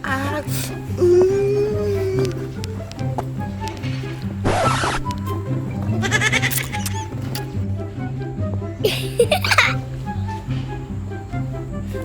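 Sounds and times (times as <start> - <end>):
background music with bass line: 0.0 - 12.0
high laughter: 5.9 - 7.1, 8.8 - 9.8.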